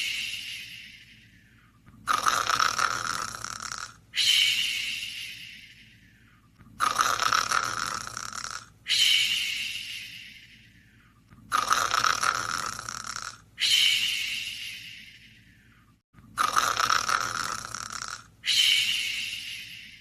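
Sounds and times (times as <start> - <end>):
rasping snore: 2.1 - 4.0, 6.8 - 8.7, 11.5 - 13.4, 16.4 - 18.3.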